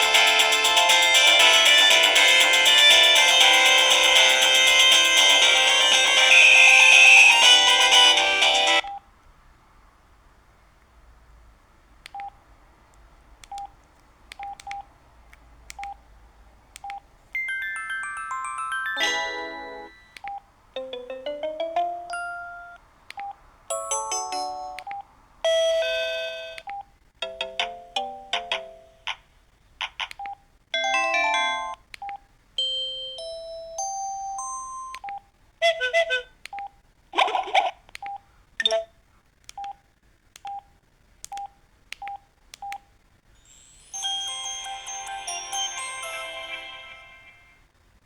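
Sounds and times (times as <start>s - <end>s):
phone beeps with clicks: 19.9s - 20.4s.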